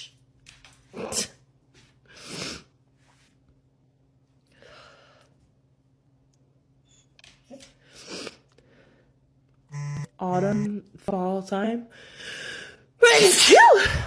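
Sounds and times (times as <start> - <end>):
woman sneezing: 13.0 - 14.0.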